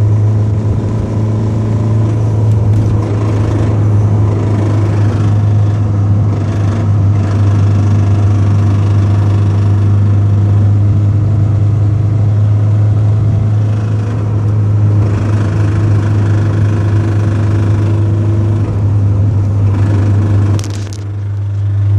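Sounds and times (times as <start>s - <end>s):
car engine droning: 0.0s - 21.9s
rattle: 1.8s - 10.2s, 13.6s - 18.9s, 19.6s - 21.8s.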